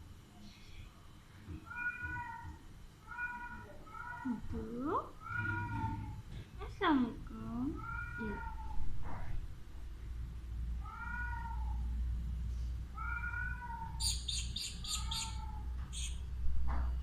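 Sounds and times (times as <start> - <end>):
parakeet meow-like calls: 13.0 - 16.2
parakeet high-pitched chattering: 14.0 - 16.2.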